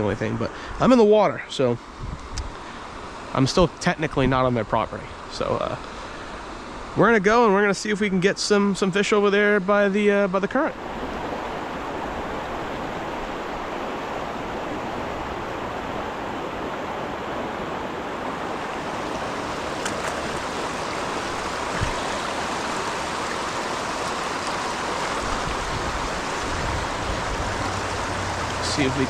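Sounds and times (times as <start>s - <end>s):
river water rushing over rocks: 10.8s - 29.0s.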